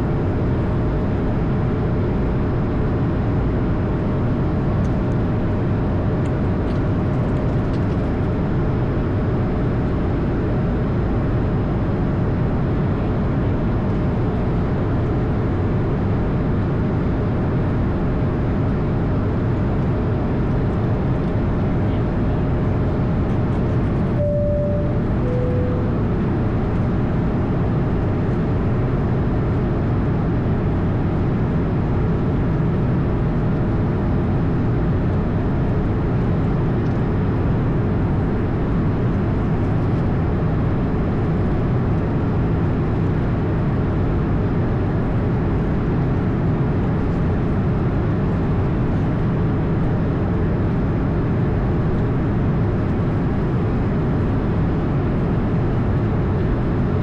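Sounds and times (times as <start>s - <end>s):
airplane cabin engine rumble: 0.0s - 57.0s
faint steady whine: 21.6s - 28.3s.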